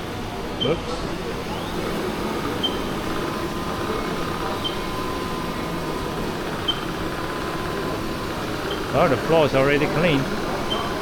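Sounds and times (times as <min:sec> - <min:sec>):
cleaning machine humming: 0:01.2 - 0:11.0.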